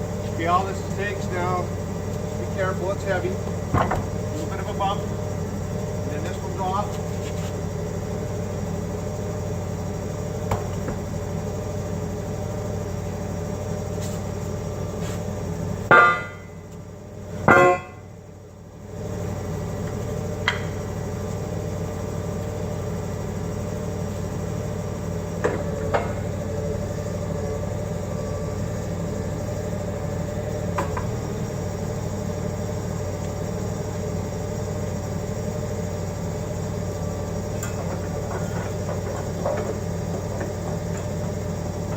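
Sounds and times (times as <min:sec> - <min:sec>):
forklift engine running: 0:00.0 - 0:41.9
ringing metal clangs: 0:15.9 - 0:16.5, 0:17.5 - 0:18.0.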